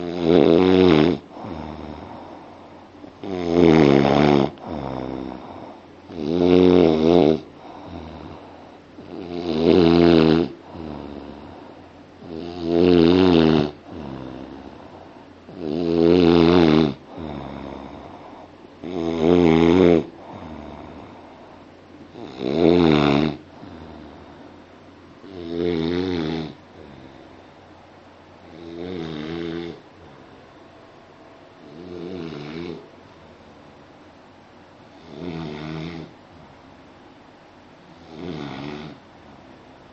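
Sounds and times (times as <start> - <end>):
person snoring: 0.0 - 24.6, 25.2 - 27.5, 28.4 - 30.4, 31.6 - 32.9, 34.9 - 36.5, 37.8 - 39.0
soft breathing: 0.6 - 6.2, 7.4 - 9.2, 10.5 - 12.3, 13.7 - 28.6.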